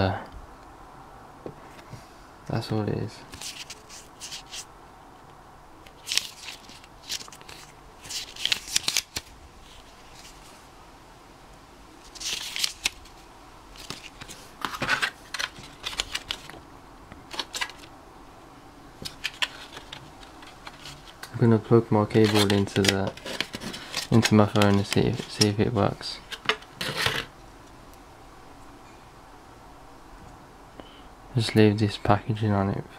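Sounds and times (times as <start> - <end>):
packaging rustling: 3.3 - 4.7, 6.0 - 10.5, 12.0 - 16.6, 17.3 - 17.9, 19.0 - 21.3, 22.0 - 25.6.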